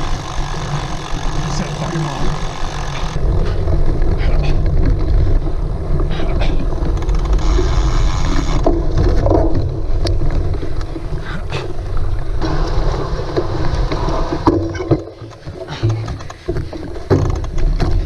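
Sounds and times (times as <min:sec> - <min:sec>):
bike rattles and knocks: 0:00.0 - 0:11.0, 0:12.4 - 0:18.0
wind rumble on microphone: 0:00.0 - 0:18.0.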